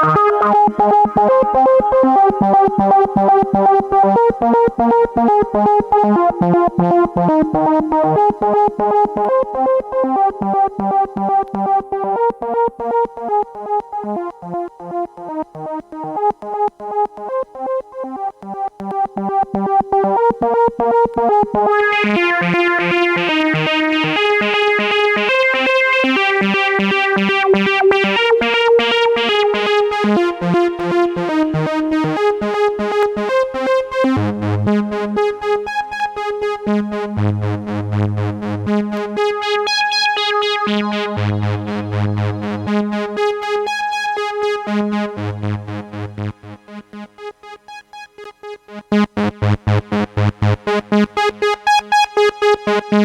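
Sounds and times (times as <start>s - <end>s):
analog synthesizer sequenced notes: 0.0s - 53.0s
synthesizer bass pattern: 48.9s - 51.3s.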